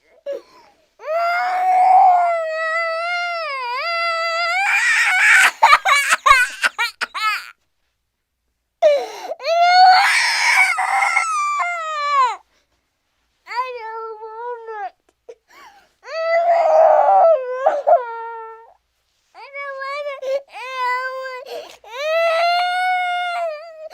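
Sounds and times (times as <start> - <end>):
gasping sobs: 21.4 - 22.2.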